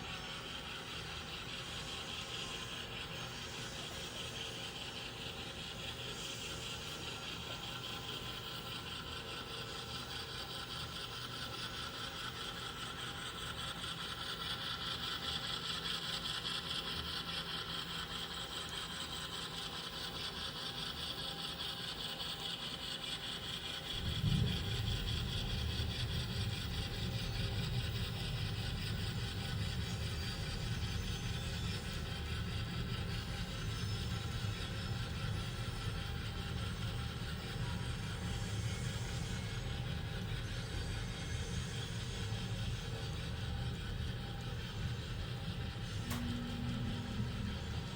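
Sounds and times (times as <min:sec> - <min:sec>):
model train motor hum: 0:00.0 - 0:47.9
deep rumble: 0:24.0 - 0:26.7.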